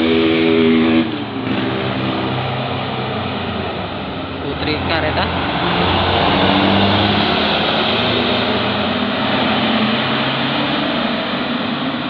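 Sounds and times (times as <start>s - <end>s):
bus diesel engine passing: 0.0s - 12.0s
road noise: 0.0s - 12.0s.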